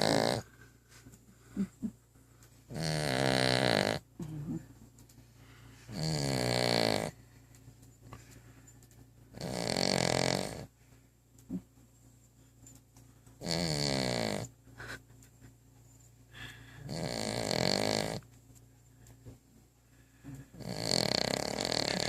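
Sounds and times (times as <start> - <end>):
dog snoring: 0.0 - 0.5, 2.7 - 4.6, 5.9 - 7.2, 9.3 - 10.7, 13.4 - 14.5, 16.8 - 18.2, 20.4 - 22.0.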